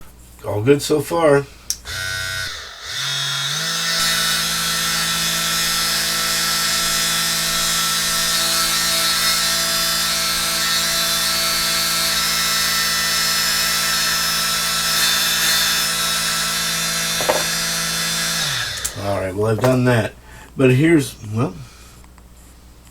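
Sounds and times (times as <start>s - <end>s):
small electric motor humming: 1.8s - 19.2s.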